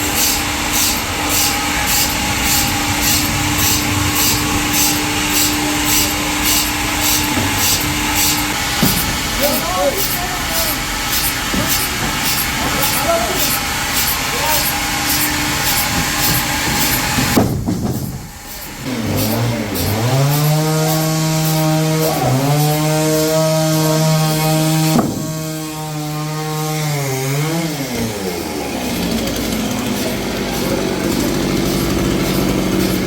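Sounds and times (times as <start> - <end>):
sawmill saw cutting logs: 0.0 - 33.0.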